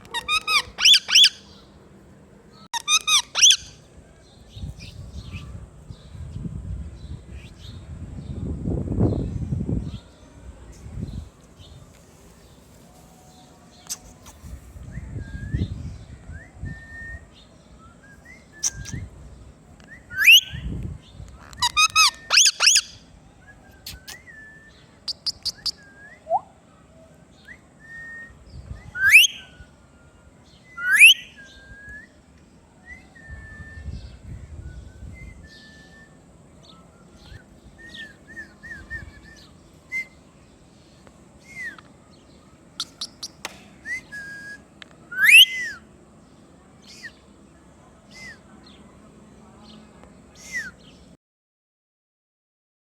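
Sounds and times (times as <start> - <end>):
parrot whistled chirps: 0.0 - 1.4, 2.8 - 3.8, 20.1 - 20.6, 21.6 - 23.0, 23.7 - 26.5, 27.9 - 29.5, 30.8 - 32.1, 42.8 - 45.8
parrot chattering calls: 0.0 - 1.5, 2.8 - 3.8, 21.4 - 22.9
parrot loud rising squawks: 0.0 - 1.5, 2.8 - 3.8.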